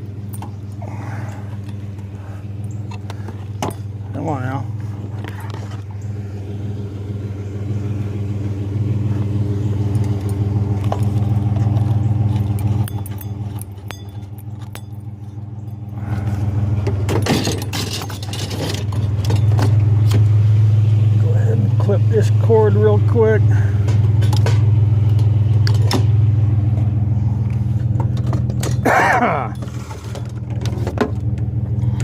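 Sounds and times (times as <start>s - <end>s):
truck engine idling: 0.0s - 32.0s
scrap metal rattling: 10.9s - 20.0s, 27.6s - 31.1s.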